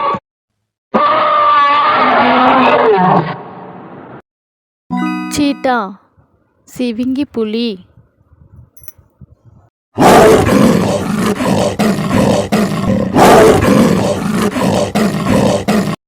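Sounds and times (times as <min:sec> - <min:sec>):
big cat roaring: 0:10.0 - 0:16.0.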